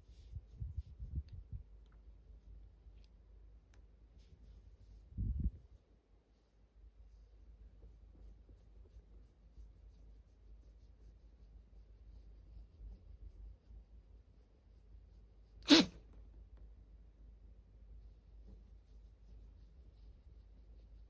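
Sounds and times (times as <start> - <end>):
faint room hum: 0.0 - 21.0
person sneezing: 15.7 - 16.0.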